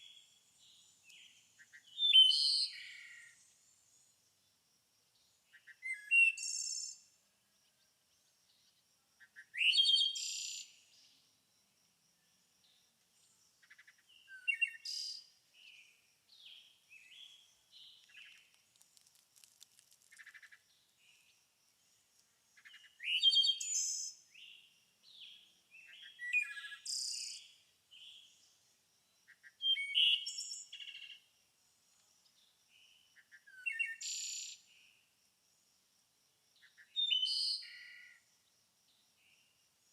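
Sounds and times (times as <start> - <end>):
soft twittering bird calls: 0.0 - 4.1, 5.2 - 7.1, 13.3 - 18.8, 22.6 - 28.6, 29.3 - 31.2, 32.2 - 34.7
songbirds chirping song: 0.0 - 39.9.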